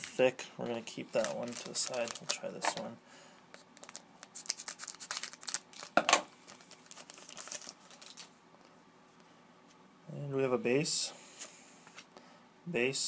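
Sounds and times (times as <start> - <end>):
wrapper crinkling and tearing: 1.0 - 2.9, 3.7 - 8.4.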